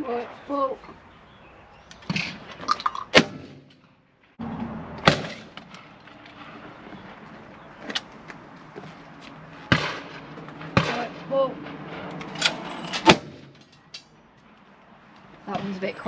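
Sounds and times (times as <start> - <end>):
shotgun shots: 3.1 - 3.8, 5.0 - 6.6, 9.7 - 13.6.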